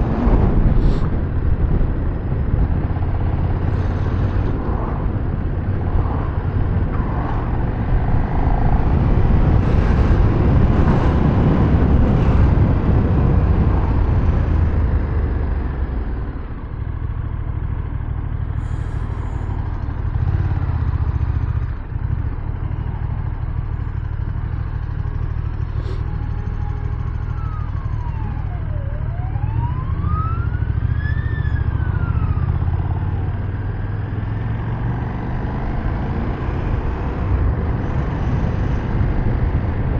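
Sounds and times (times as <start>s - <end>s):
motorcycle engine running: 0.0s - 27.3s
siren wailing: 26.0s - 33.4s.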